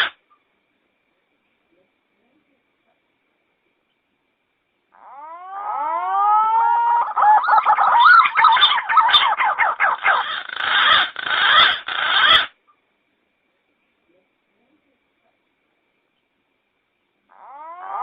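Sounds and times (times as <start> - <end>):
warbling whistled bird call: 5.0 - 12.6, 17.3 - 18.0.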